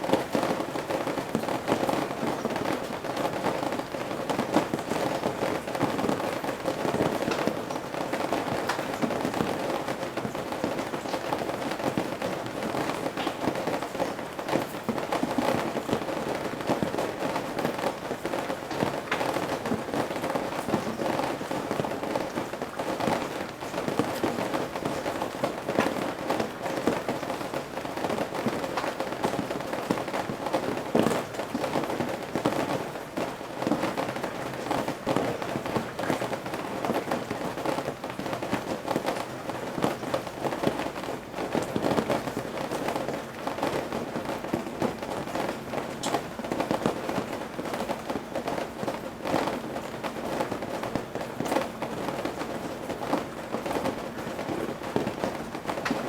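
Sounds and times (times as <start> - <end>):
rain dripping on roof edge: 0.0 - 56.0.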